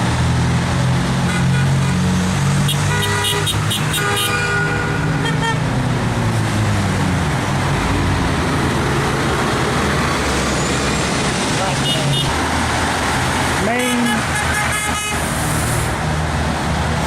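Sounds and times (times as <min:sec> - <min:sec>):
highway traffic passing: 0:00.0 - 0:17.0
car horn beeping: 0:02.7 - 0:05.6, 0:11.8 - 0:12.4, 0:13.7 - 0:15.3.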